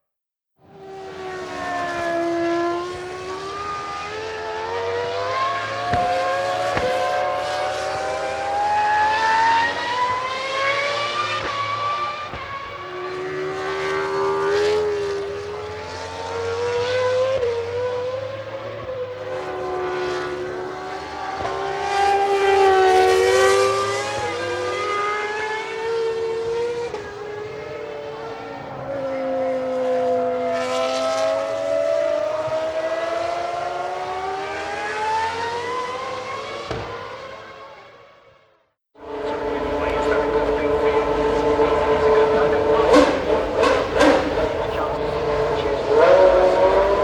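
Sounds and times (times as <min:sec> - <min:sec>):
racing car engines at high revs: 0:00.6 - 0:47.0.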